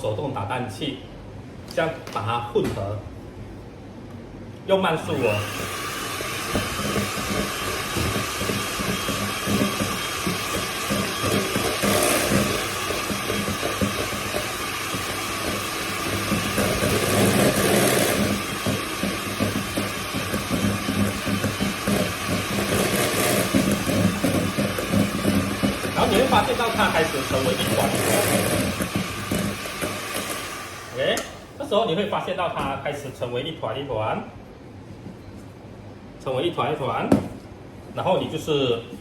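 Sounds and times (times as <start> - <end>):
electric hand mixer humming: 5.1 - 31.0
beaters knocking against bowl: 6.5 - 30.3.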